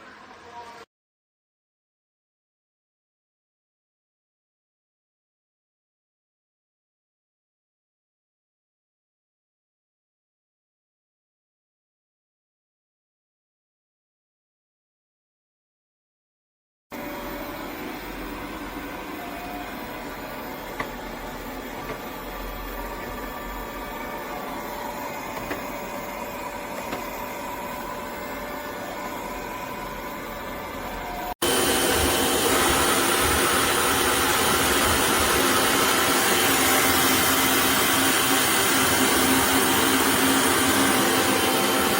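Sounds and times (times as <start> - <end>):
robot vacuum cleaner whirring: 16.9 - 41.9
loud steady motor noise: 17.0 - 41.9.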